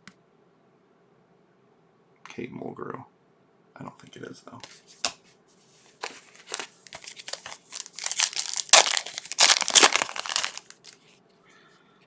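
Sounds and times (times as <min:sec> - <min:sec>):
foil wrapper tearing and crinkling: 0:06.0 - 0:11.0.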